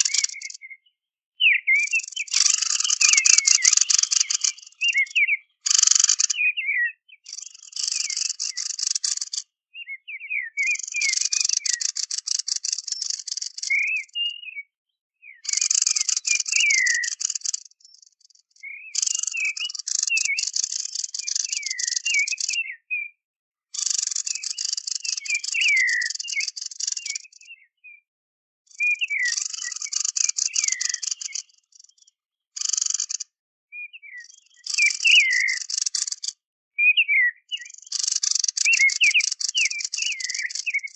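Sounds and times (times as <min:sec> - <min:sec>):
rattling bird churrs: 0:00.0 - 0:00.7, 0:01.7 - 0:06.5, 0:07.3 - 0:09.5, 0:10.6 - 0:13.9, 0:15.4 - 0:18.1, 0:19.0 - 0:22.7, 0:23.8 - 0:27.4, 0:28.8 - 0:32.0, 0:32.6 - 0:33.3, 0:34.6 - 0:36.4, 0:37.6 - 0:40.9
swooping whistled bird notes: 0:00.0 - 0:09.0, 0:09.8 - 0:17.7, 0:18.6 - 0:23.1, 0:23.8 - 0:28.0, 0:28.8 - 0:32.0, 0:33.7 - 0:40.9.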